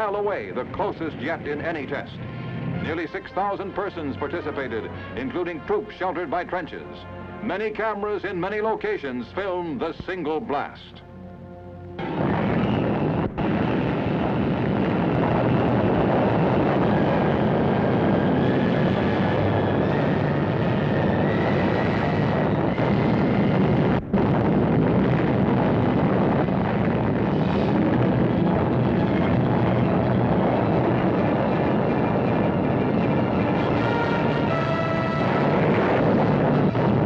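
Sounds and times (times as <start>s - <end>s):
loud rumbling roar of explosion: 12.0s - 37.0s.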